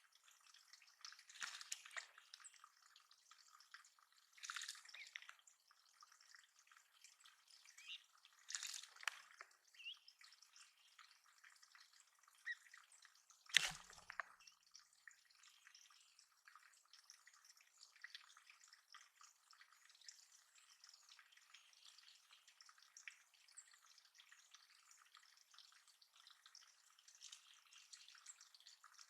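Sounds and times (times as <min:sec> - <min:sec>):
water splashes: 0:00.0 - 0:14.8
water dripping and trickling: 0:00.0 - 0:29.0.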